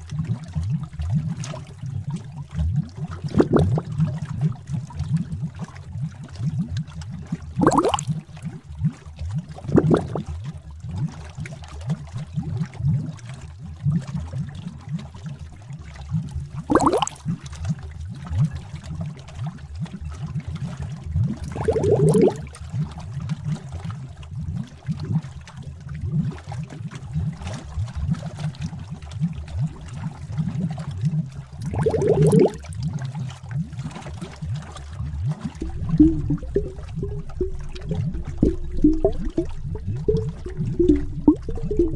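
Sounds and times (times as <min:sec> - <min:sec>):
thick liquid bubbling: 0:00.0 - 0:41.9
big bubble bursting: 0:03.2 - 0:04.3, 0:07.5 - 0:08.2, 0:09.6 - 0:10.3, 0:16.7 - 0:17.3, 0:21.2 - 0:22.6, 0:31.6 - 0:33.0, 0:35.0 - 0:41.9.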